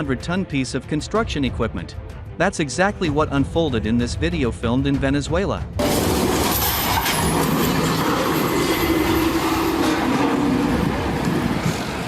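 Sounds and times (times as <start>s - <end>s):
heavy vehicle rumble and clatter: 5.8s - 12.0s.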